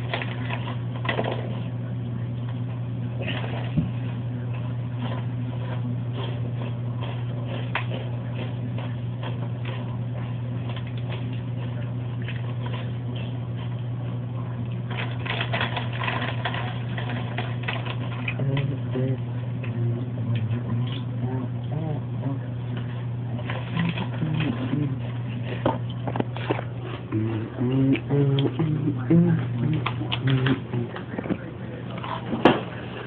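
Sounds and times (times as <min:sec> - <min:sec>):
steady low hum: 0:00.0 - 0:33.0.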